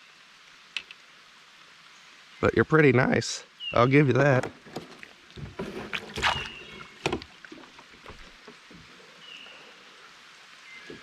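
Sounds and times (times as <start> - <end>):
light rain hiss: 0.0 - 11.0
water splashing: 4.2 - 9.8
handling knocks: 4.4 - 8.5.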